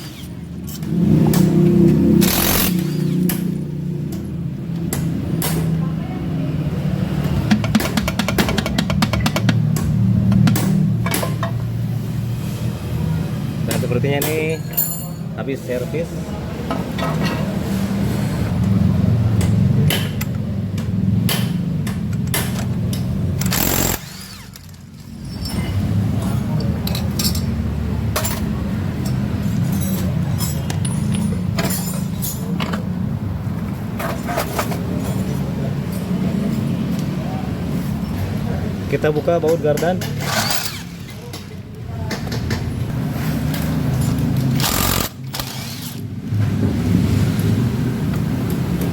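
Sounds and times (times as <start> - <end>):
knocks: 7.4 - 11.5
metal tools clinking: 14.2 - 15.4, 22.1 - 27.6, 28.2 - 32.8, 39.4 - 41.6.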